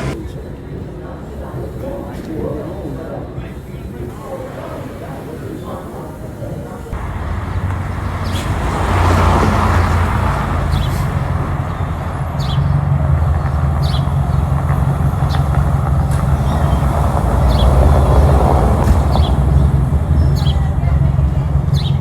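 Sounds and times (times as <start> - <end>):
vehicle engine humming: 6.8 - 22.0.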